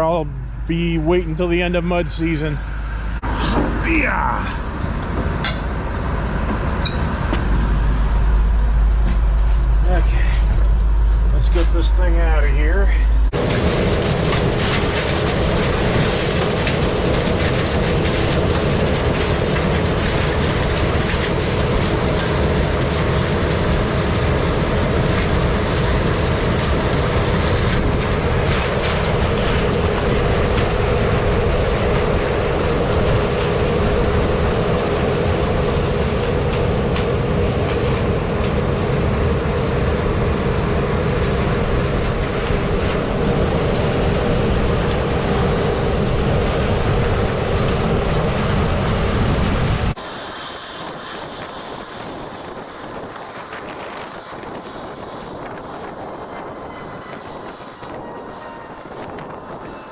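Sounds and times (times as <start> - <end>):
combine harvester running: 0.0 - 59.9
constant machine whine: 0.0 - 59.9.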